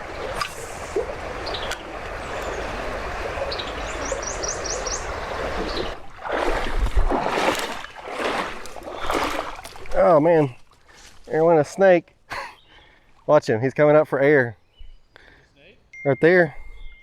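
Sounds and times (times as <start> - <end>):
water splashing: 0.0 - 11.0
creek water running over rocks: 0.0 - 11.9
bird chirping: 1.4 - 2.7, 3.4 - 6.0, 14.5 - 17.0.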